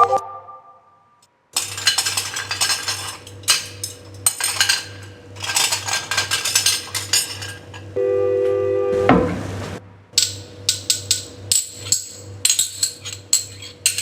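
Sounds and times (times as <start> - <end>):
hard objects clinking: 1.6 - 7.9.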